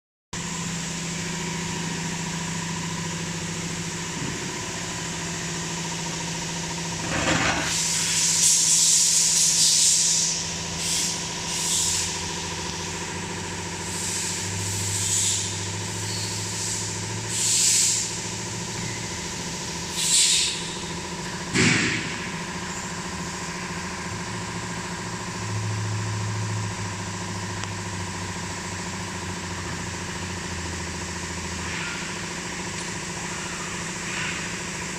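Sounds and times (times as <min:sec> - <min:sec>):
machinery hum and whine: 0:00.4 - 0:34.9
short hissing bursts: 0:13.8 - 0:18.2, 0:19.9 - 0:20.7.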